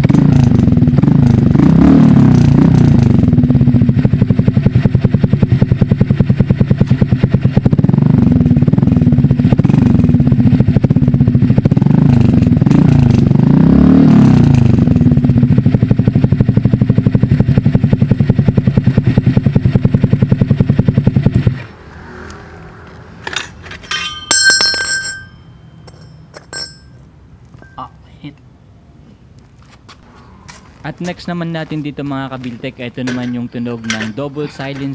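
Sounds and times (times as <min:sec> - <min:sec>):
scooter engine idling and revving: 0:00.0 - 0:23.7
light metallic clinks: 0:23.3 - 0:27.0, 0:33.0 - 0:34.9.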